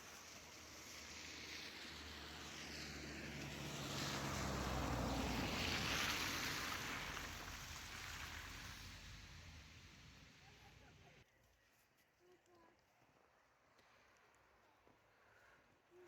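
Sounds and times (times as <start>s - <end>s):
vehicle engine hum: 0.0s - 11.2s.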